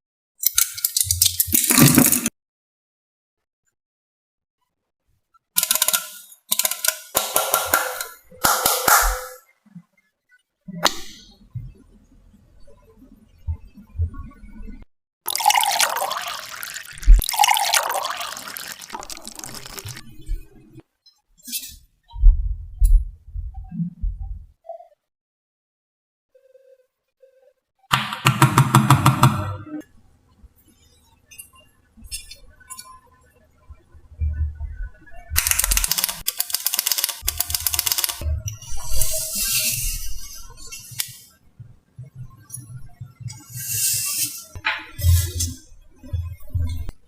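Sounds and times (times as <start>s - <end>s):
liquid pouring and splashing: 15.3s - 20.3s
rapid crackling clicks: 35.4s - 38.2s.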